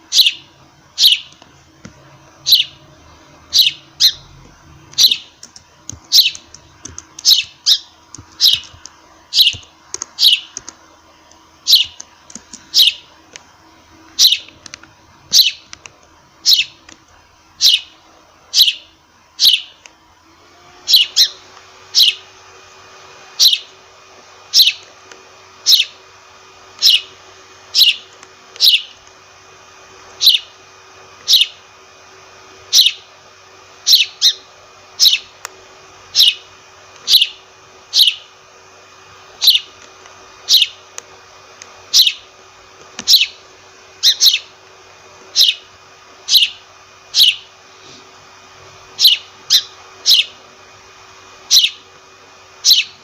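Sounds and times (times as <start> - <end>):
sparrow chirping: 0.1 - 1.3, 2.4 - 2.8, 3.5 - 4.4, 5.0 - 5.4, 6.1 - 6.6, 7.2 - 10.6, 11.6 - 12.0, 12.6 - 13.1, 14.2 - 14.5, 15.3 - 15.7, 16.4 - 16.8, 17.6 - 19.8, 20.9 - 22.3, 23.4 - 23.7, 24.5 - 24.8, 25.6 - 26.0, 26.8 - 29.0, 30.2 - 30.5, 31.2 - 31.6, 32.7 - 33.0, 33.8 - 35.3, 36.1 - 38.3, 39.4 - 39.8, 40.5 - 40.8, 41.9 - 42.3, 43.0 - 43.4, 44.0 - 44.5, 45.3 - 45.7, 46.3 - 47.5, 49.0 - 50.4, 51.5 - 51.8, 52.6 - 53.0.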